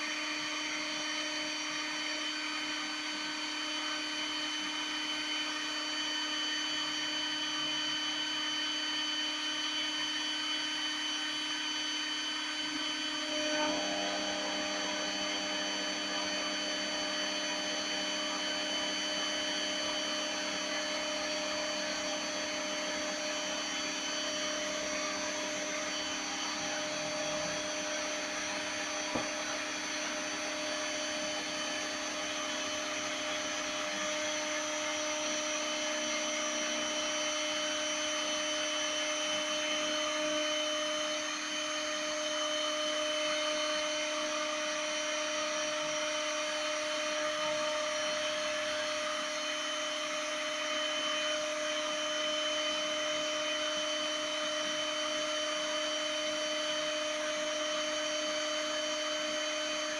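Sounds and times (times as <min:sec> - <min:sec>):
milling machine spindle whine: 0:00.0 - 0:59.9.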